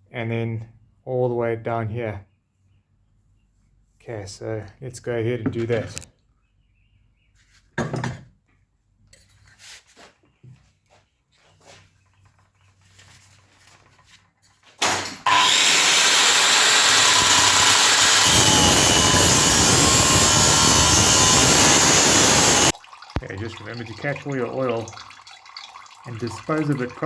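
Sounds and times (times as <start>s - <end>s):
power tool cutting steel: 14.8s - 22.8s.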